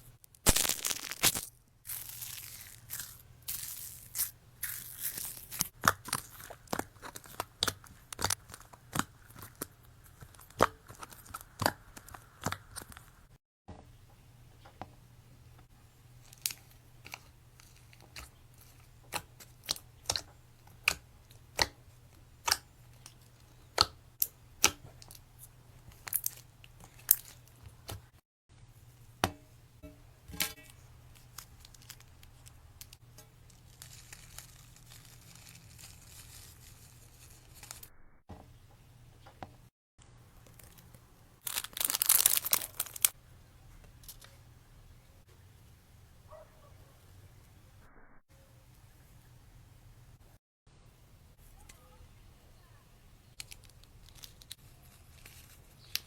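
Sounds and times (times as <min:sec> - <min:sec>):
slime crackling burst: 0:00.4 - 0:05.7.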